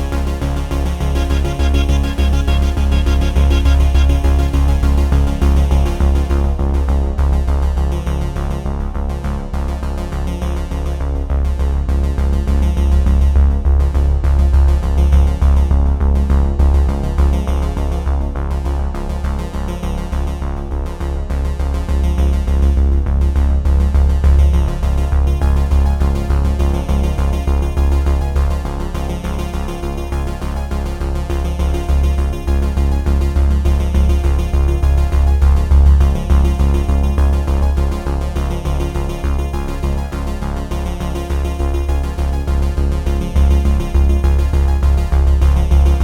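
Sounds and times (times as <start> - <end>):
electronic synthesizer music: 0.0 - 6.6.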